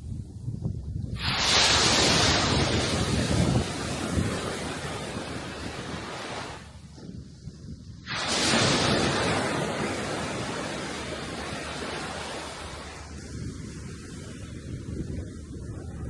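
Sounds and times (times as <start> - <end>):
sea wave breaking: 1.2 - 6.8, 8.0 - 14.8.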